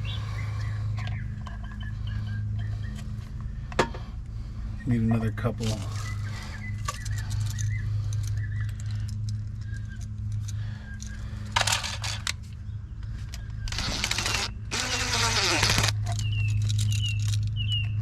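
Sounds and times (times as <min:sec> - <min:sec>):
steady low hum: 0:00.0 - 0:18.0
metal parts and tools rattling: 0:05.2 - 0:17.9.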